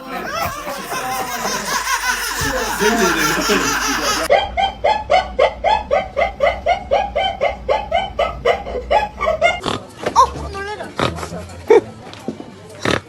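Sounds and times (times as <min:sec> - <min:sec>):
wavering laughter: 0:00.0 - 0:04.5
high-pitched pulsing laugh: 0:00.0 - 0:08.1.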